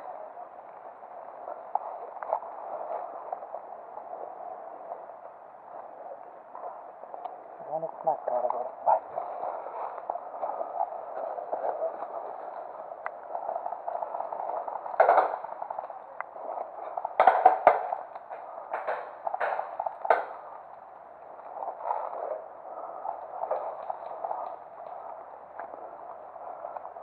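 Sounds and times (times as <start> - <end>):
steady rustling noise: 0.0 - 7.6, 8.4 - 27.0.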